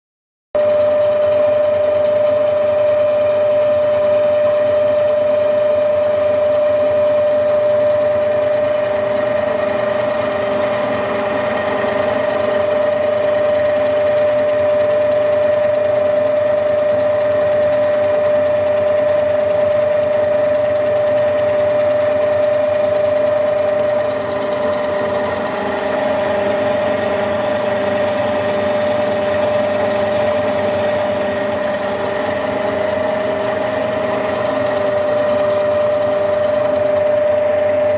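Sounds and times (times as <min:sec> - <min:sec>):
milling machine whining: 0:00.6 - 0:37.9.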